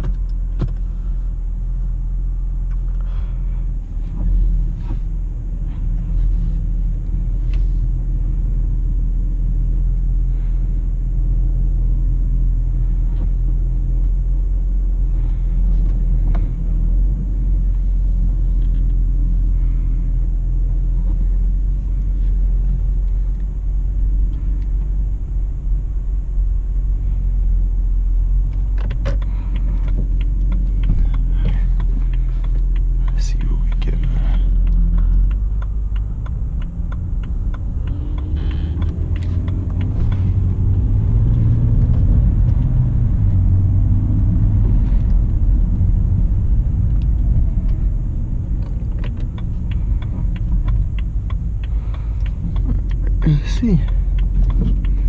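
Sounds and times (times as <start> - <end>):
car engine and road noise: 0.0 - 55.0
faint clicks: 28.4 - 40.6.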